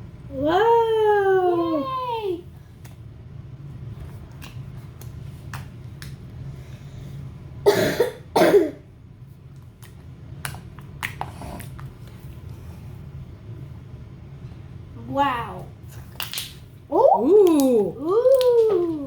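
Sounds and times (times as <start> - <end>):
person coughing: 7.7 - 8.8.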